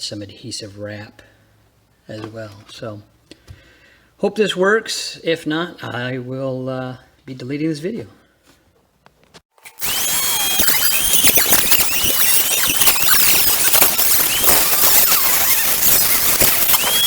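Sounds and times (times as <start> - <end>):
rotary tool grinding plastic: 9.5 - 17.0.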